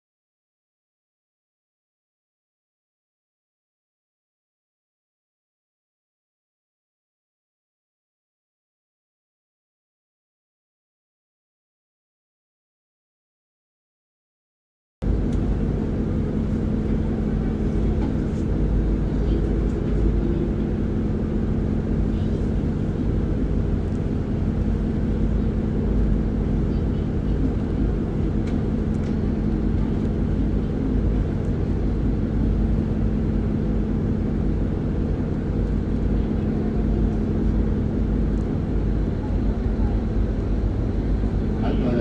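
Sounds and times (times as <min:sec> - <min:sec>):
bus diesel engine running: 0:15.0 - 0:42.0.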